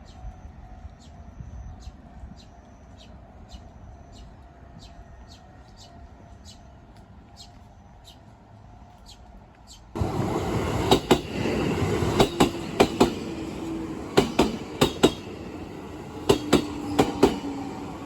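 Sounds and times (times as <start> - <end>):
train passing: 0.0 - 18.0
wheels clicking over rail joints: 10.0 - 18.0.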